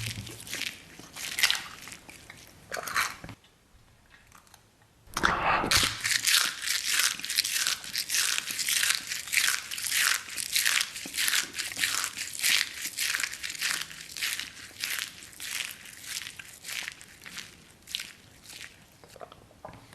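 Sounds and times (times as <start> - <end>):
crunchy chewing: 0.0 - 3.4, 5.2 - 19.5
loud bite: 5.1 - 6.4.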